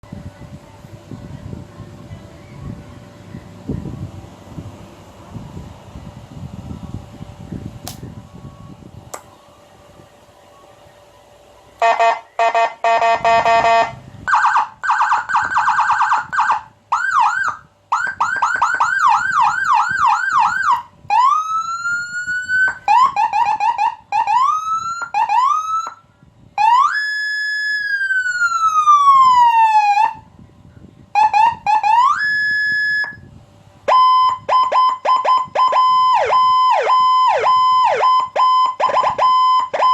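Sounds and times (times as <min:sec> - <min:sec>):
electronic siren cycling tones: 0:11.8 - 0:26.0, 0:31.2 - 0:33.3, 0:33.9 - 0:39.9.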